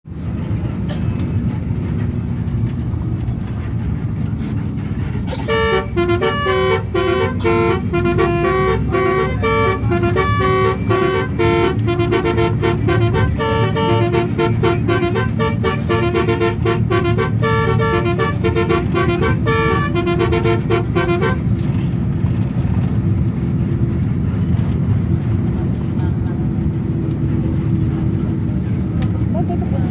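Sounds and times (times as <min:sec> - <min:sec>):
bus rumble: 0:00.0 - 0:29.9
multi-tone bus horn melody: 0:03.1 - 0:22.1.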